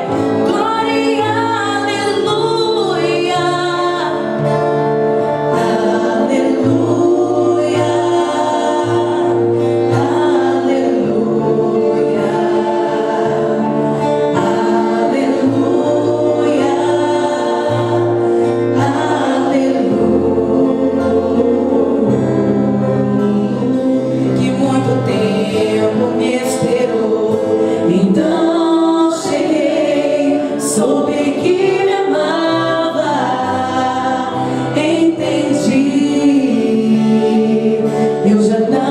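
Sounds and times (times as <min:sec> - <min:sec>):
vocal group singing in harmony: 0:00.0 - 0:38.9.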